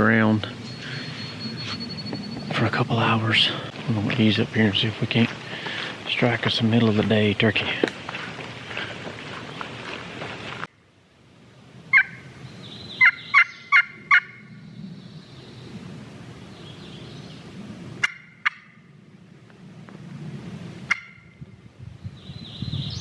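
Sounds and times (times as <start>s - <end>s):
turkey call sharp notes: 11.9s - 12.3s, 13.0s - 14.4s, 18.0s - 18.9s, 20.9s - 21.4s.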